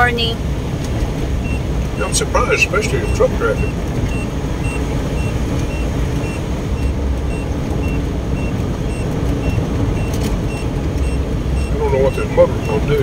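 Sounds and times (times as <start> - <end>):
car road noise: 0.0 - 13.0.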